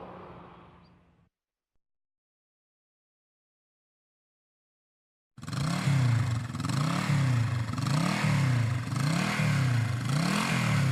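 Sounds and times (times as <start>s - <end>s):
motorcycle engine revving: 5.4s - 10.9s.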